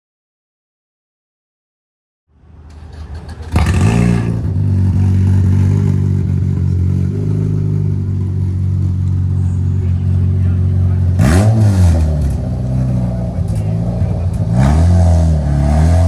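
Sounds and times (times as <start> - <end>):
race vehicle engine revving and idling: 2.5 - 16.0.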